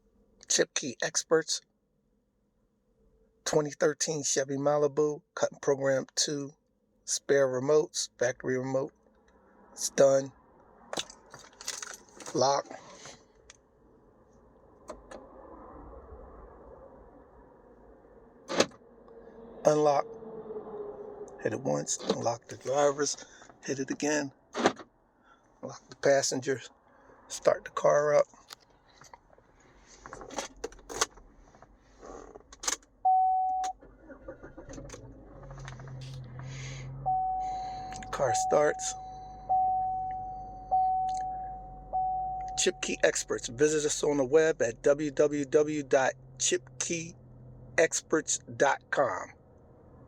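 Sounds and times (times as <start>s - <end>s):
car keys jangling: 10.9s - 12.4s
car door locks clicking: 18.5s - 18.8s
low steady hum: 32.6s - 50.0s
car alarm chirp: 33.0s - 33.8s, 37.0s - 43.0s
electronic chime tone: 37.1s - 42.9s.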